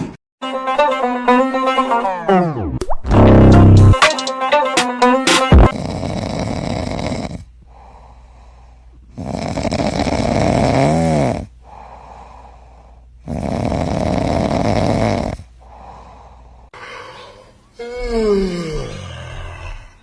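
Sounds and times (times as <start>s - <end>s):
loud snoring: 5.6s - 8.0s, 9.1s - 12.4s, 13.2s - 20.0s
quiet breathing: 5.8s - 9.7s, 11.3s - 13.8s, 15.2s - 20.0s.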